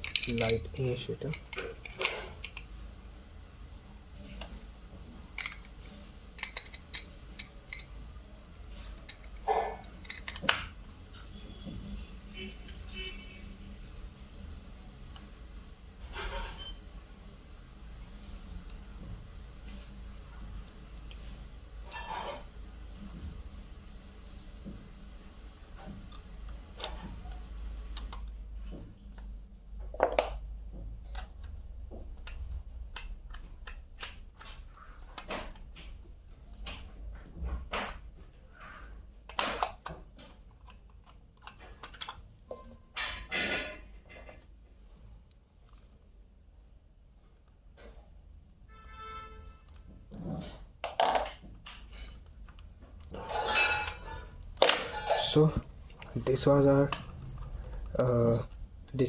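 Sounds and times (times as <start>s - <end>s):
plastic mouse parts clicking: 9.0s - 11.0s, 31.1s - 35.6s, 39.3s - 42.3s
brief tone: 48.7s - 49.8s.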